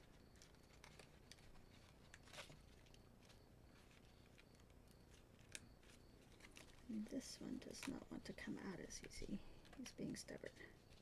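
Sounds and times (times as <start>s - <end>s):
faint paper rustles: 0.0s - 11.0s.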